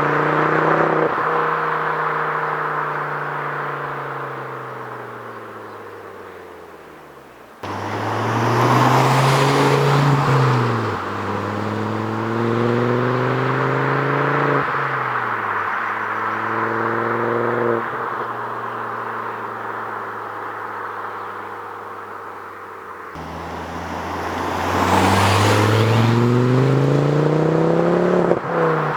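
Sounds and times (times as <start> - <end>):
car engine revving: 7.6 - 14.8, 23.2 - 28.9.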